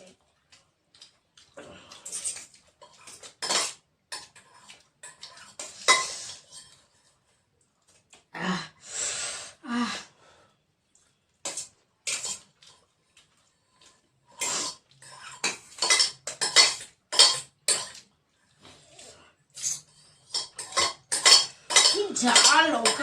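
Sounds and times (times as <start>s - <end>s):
utensils clinking on plates: 15.1s - 18.0s, 20.0s - 23.0s.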